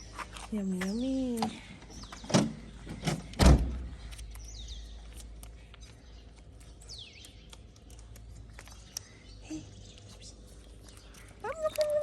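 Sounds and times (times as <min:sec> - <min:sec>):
thump: 0:03.4 - 0:03.8
kitten chewing clicks: 0:03.9 - 0:12.0.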